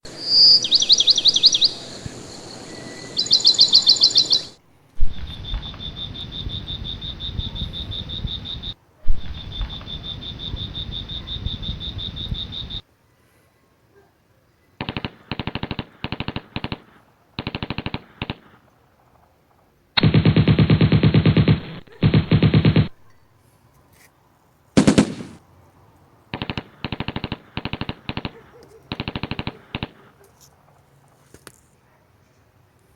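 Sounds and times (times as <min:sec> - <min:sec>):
bird chirping: 0:00.0 - 0:12.8
automatic gunfire: 0:14.8 - 0:18.7, 0:20.0 - 0:23.0, 0:24.8 - 0:25.4, 0:26.3 - 0:30.2.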